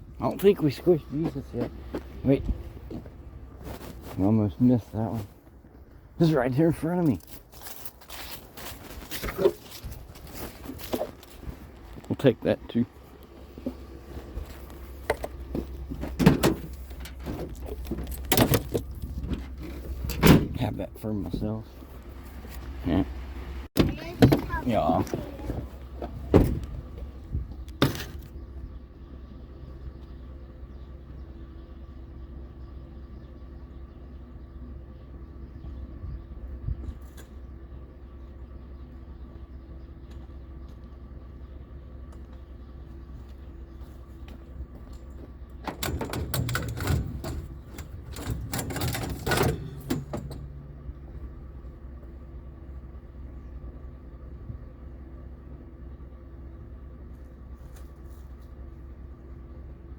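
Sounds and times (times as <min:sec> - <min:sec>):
vehicle engine rumbling: 0:00.0 - 0:59.9
objects clattering and rattling: 0:07.2 - 0:12.1, 0:44.9 - 0:50.7.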